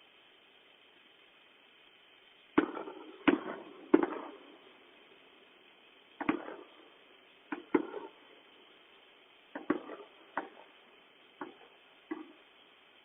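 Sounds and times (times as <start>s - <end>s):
fireworks bangs: 2.5s - 12.8s.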